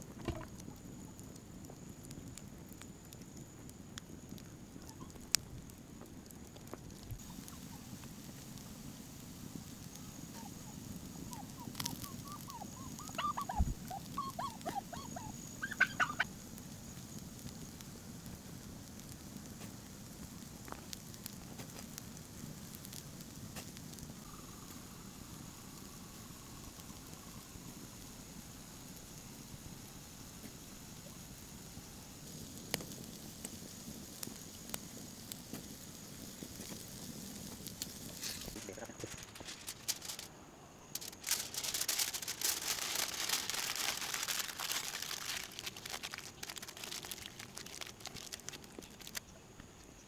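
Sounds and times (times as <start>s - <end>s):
bird warbling call: 10.3s - 16.3s.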